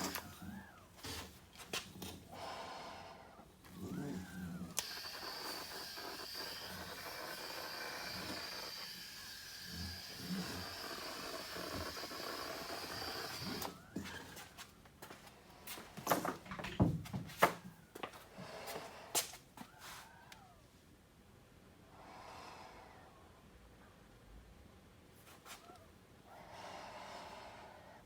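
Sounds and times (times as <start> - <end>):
compressed air hissing: 4.7 - 13.9.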